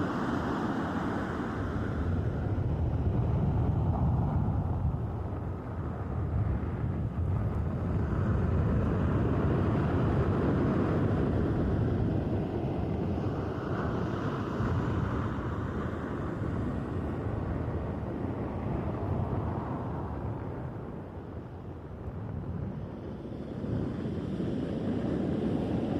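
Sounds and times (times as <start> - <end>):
waves breaking on shore: 0.0 - 3.6, 7.7 - 21.0.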